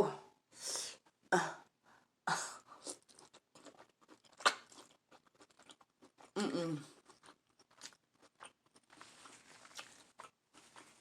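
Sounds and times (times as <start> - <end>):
mouth eating noises: 2.6 - 11.0.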